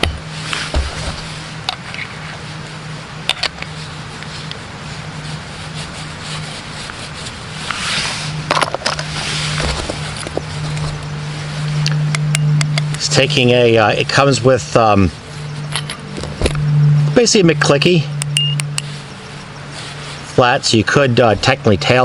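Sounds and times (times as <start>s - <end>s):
steady low hum: 0.0s - 22.0s
rubbing scraping on metal: 3.7s - 17.0s.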